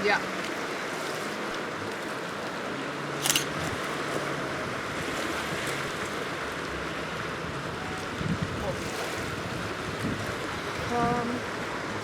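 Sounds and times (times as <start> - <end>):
wind and surf rushing: 0.0 - 12.0.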